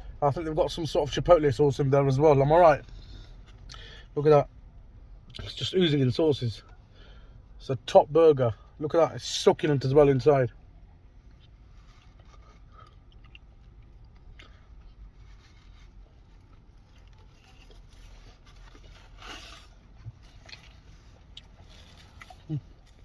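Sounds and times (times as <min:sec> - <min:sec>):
person chewing food: 0:11.4 - 0:15.1, 0:16.4 - 0:23.0.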